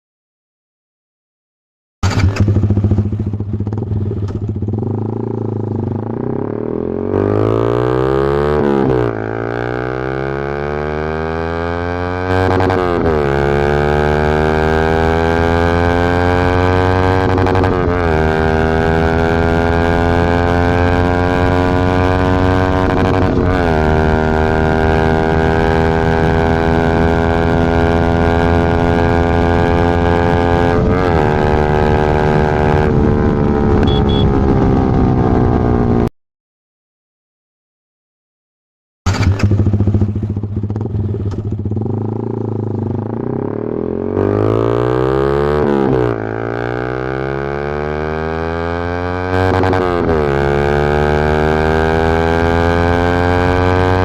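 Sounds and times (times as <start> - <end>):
motorcycle engine accelerating: 2.0 - 36.1, 39.1 - 54.0.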